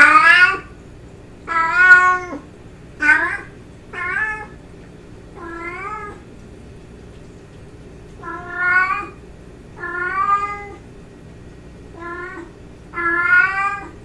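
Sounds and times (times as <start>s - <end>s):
cat meowing: 0.0s - 0.7s, 1.5s - 4.6s, 5.4s - 6.3s, 8.2s - 9.2s, 9.8s - 10.8s, 11.9s - 14.0s.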